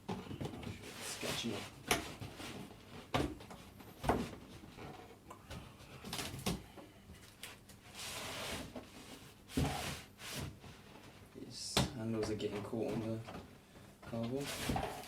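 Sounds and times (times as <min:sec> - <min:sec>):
cardboard scraping rustle: 0:14.4 - 0:15.0.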